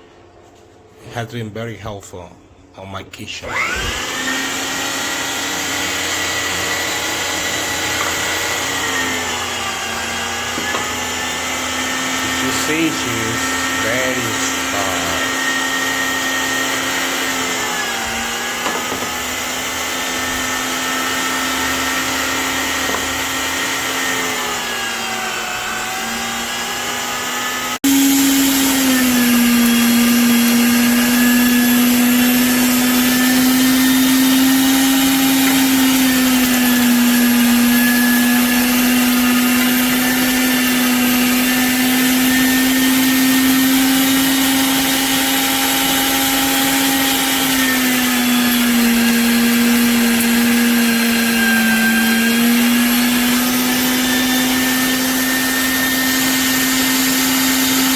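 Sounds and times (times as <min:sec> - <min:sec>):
meat grinder motor humming: 0:03.5 - 0:57.9.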